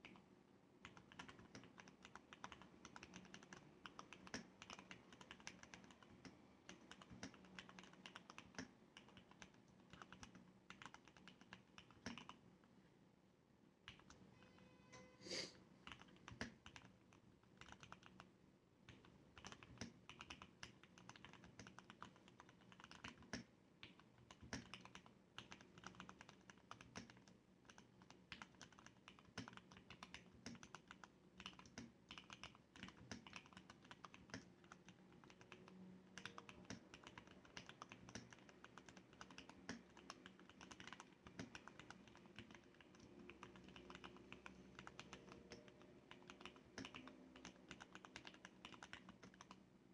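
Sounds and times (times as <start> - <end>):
soft mechanical keyboard typing: 0.0 - 12.8, 13.8 - 14.6, 15.8 - 49.8.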